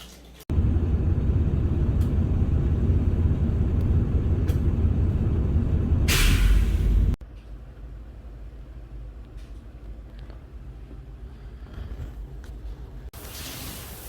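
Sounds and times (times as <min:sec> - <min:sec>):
vehicle rumbling: 0:00.5 - 0:13.1
loud hiss: 0:13.2 - 0:14.0.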